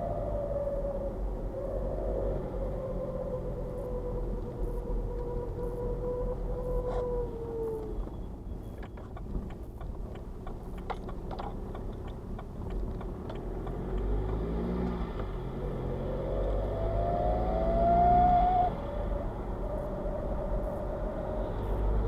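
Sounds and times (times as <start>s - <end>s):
diesel car driving: 0.0s - 22.0s
light ticks: 8.7s - 14.4s.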